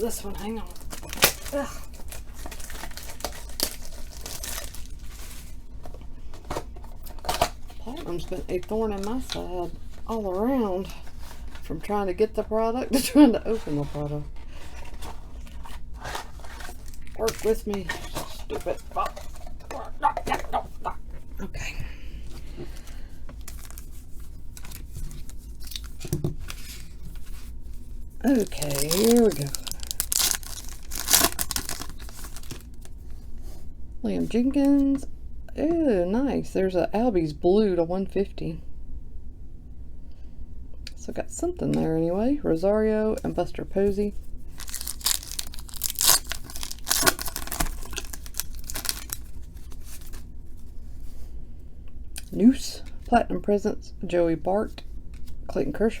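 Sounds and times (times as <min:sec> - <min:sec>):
cards rustling: 0:00.0 - 0:21.3, 0:22.2 - 0:33.6, 0:43.2 - 0:51.3
packaging torn and crinkled: 0:00.2 - 0:05.6, 0:07.0 - 0:09.5, 0:14.4 - 0:20.9, 0:23.4 - 0:27.4, 0:28.2 - 0:33.1, 0:44.5 - 0:50.3.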